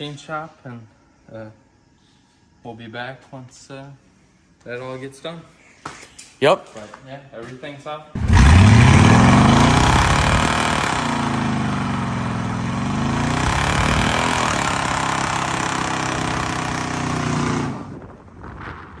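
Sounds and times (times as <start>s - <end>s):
engine revving: 8.2s - 18.0s.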